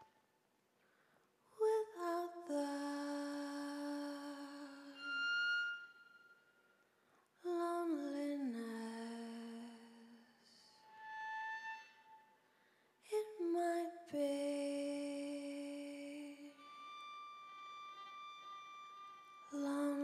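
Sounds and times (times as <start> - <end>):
slow music of long held notes: 1.6 - 6.7, 13.1 - 20.0.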